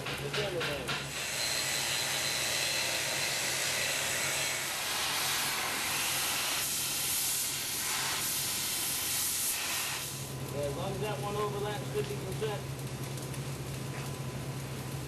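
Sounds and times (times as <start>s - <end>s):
welding arc hissing: 0.0s - 15.0s.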